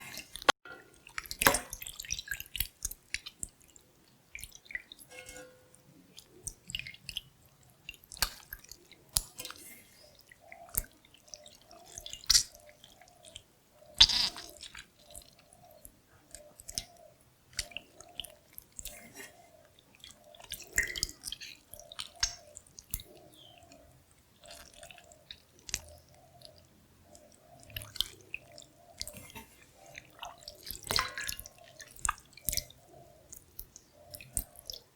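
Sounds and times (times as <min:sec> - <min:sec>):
drips: 0:00.0 - 0:34.9
wet sticky squelches: 0:00.1 - 0:34.9.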